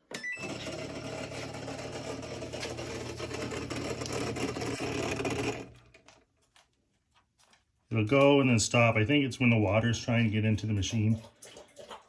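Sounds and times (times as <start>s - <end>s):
washer humming: 0.0s - 6.0s
washer rattling and grinding: 0.2s - 6.1s.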